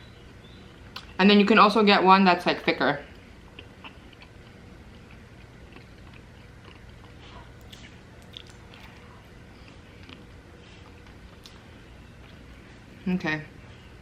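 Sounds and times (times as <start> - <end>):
person chewing food: 3.4 - 12.7.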